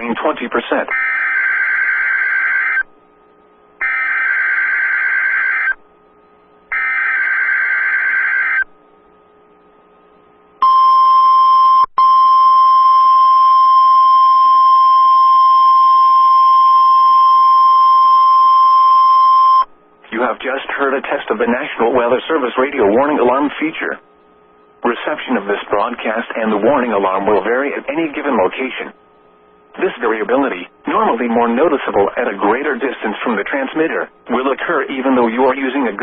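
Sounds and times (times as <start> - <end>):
steady warning alarm tone: 0.9 - 2.9, 3.8 - 5.8, 6.7 - 8.7.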